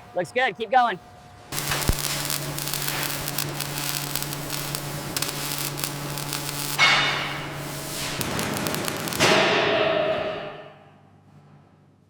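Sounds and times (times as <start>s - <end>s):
steady low hum: 0.0s - 12.0s
crackling and clicking noise: 1.5s - 9.5s.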